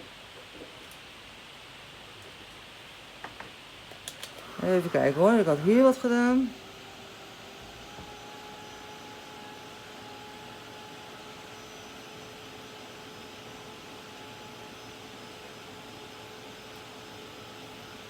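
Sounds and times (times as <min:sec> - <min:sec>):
heat tool blowing air: 0:04.2 - 0:18.0.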